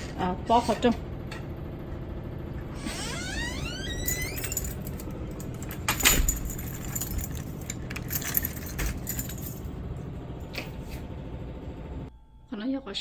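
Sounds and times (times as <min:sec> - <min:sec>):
keys jangling: 0:03.6 - 0:09.9.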